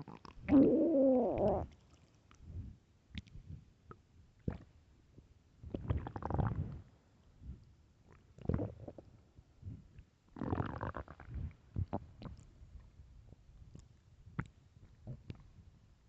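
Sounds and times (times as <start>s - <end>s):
stomach growling: 0.0s - 1.8s, 5.7s - 6.8s, 8.4s - 9.1s, 10.4s - 12.4s.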